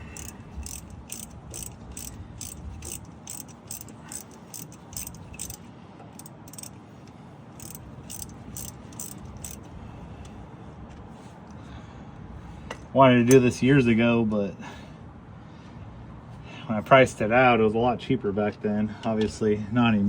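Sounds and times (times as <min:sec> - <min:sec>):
ratchet wrench clicking: 0:00.0 - 0:06.8, 0:07.6 - 0:09.7.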